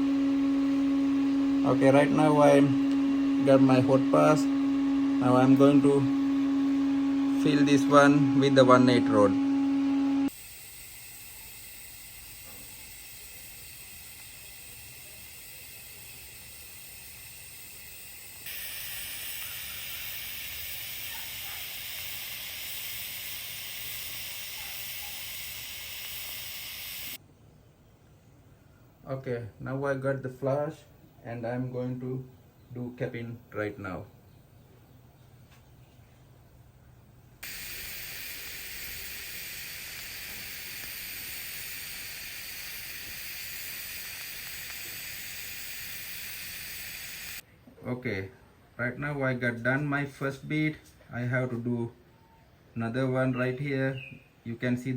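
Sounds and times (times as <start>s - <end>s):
welding arc hissing: 5.2s - 9.2s, 10.2s - 27.2s, 37.4s - 47.4s.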